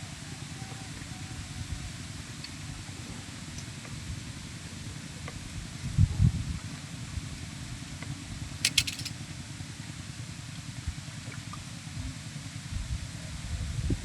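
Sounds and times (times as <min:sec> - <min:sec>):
sharp clicks: 0:08.6 - 0:09.1.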